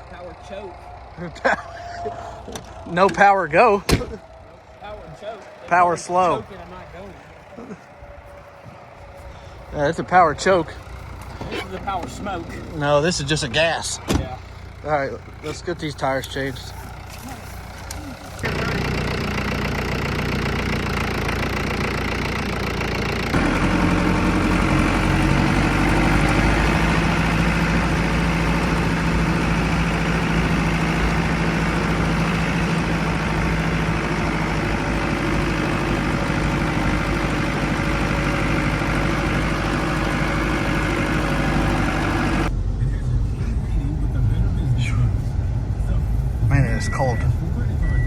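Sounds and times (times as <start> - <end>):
vehicle engine idling: 0.0 - 48.0.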